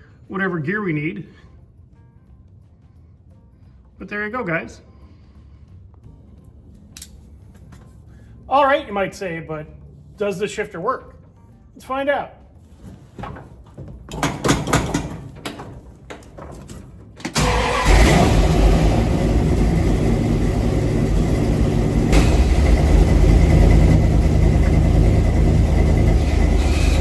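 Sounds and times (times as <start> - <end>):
clicks and knocks: 12.9 - 17.4
truck engine starting and idling: 13.4 - 27.0.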